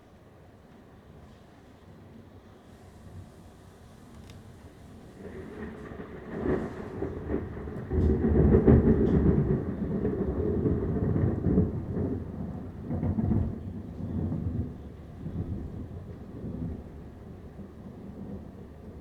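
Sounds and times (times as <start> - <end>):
thunder rumbling: 4.4 - 19.0.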